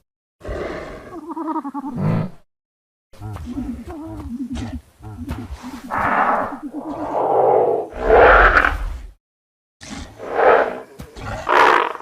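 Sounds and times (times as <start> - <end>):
growling creature roar: 5.9 - 9.0.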